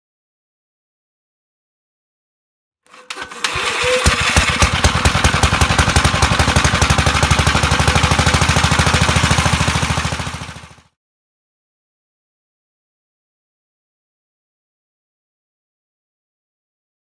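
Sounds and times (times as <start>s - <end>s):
garden tractor engine running: 2.9s - 10.9s.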